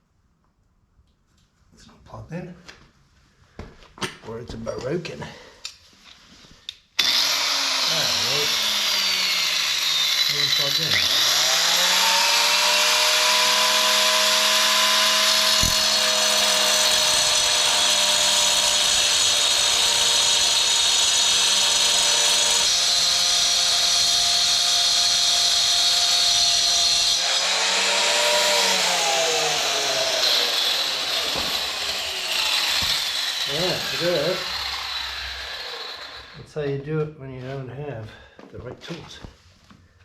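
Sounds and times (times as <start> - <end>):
power tool whining: 7.0 - 36.5.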